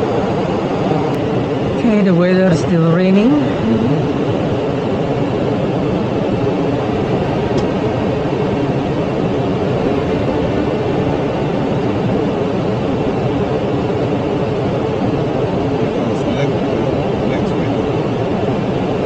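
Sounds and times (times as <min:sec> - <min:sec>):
cockpit air rush and hum: 0:06.6 - 0:19.0.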